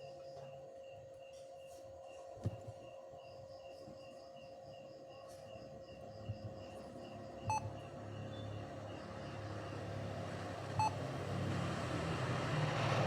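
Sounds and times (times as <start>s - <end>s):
short electronic beeps: 7.5s - 7.7s, 10.8s - 11.0s.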